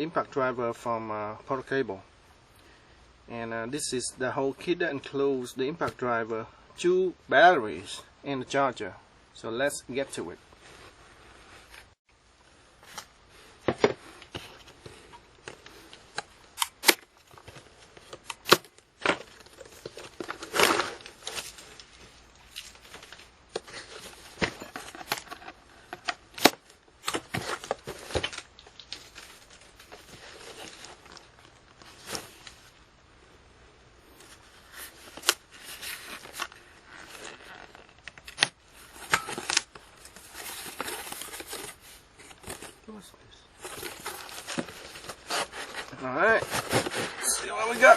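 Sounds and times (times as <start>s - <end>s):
packaging rustling: 12.8s - 32.8s, 34.1s - 42.9s, 43.5s - 47.9s.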